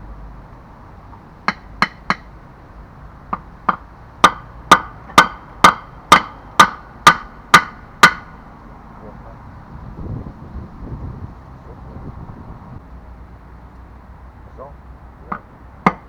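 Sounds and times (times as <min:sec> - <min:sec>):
hammer striking metal: 0:03.3 - 0:08.4, 0:15.3 - 0:16.0.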